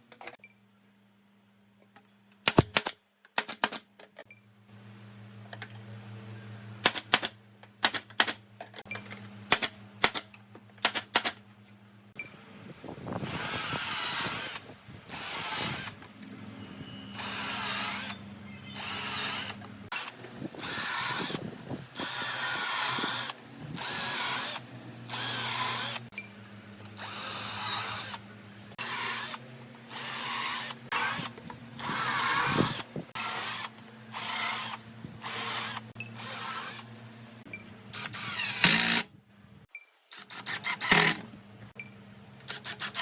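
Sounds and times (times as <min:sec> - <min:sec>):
power drill running in bursts: 0:13.2 - 0:16.0, 0:17.1 - 0:26.1, 0:27.0 - 0:28.2, 0:28.8 - 0:36.9.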